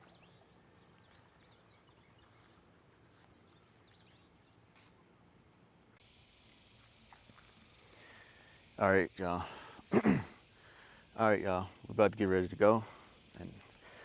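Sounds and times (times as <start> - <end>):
steady bright hiss: 6.0 - 14.0.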